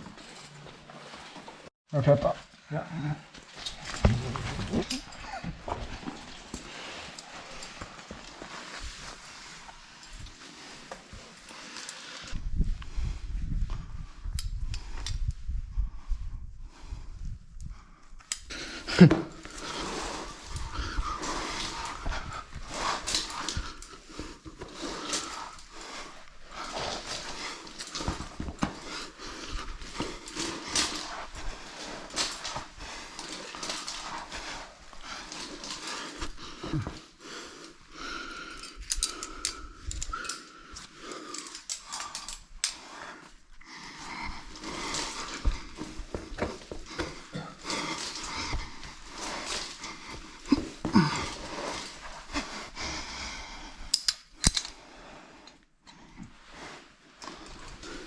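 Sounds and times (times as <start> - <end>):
man breathing heavily and grunting: 18.5 - 54.0.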